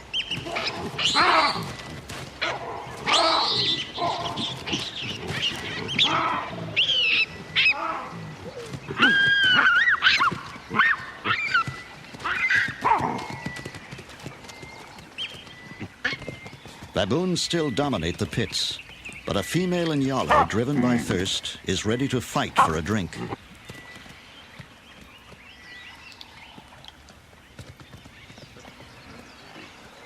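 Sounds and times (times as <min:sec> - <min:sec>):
baboons screaming: 0:00.4 - 0:01.8, 0:02.4 - 0:13.2.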